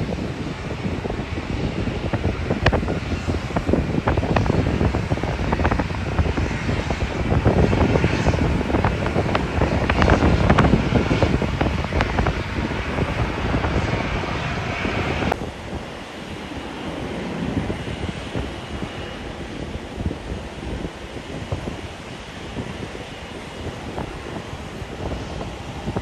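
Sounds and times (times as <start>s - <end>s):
jet engines rumbling: 0.0s - 26.0s
wind buffeting microphone: 0.0s - 26.0s.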